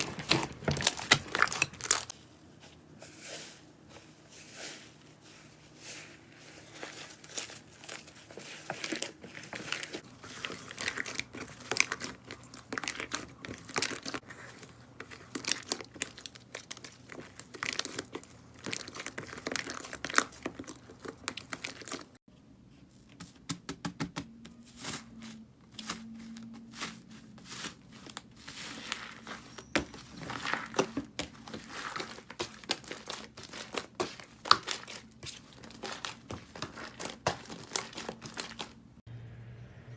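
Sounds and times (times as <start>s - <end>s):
slime crackling and popping: 30.2s - 38.7s.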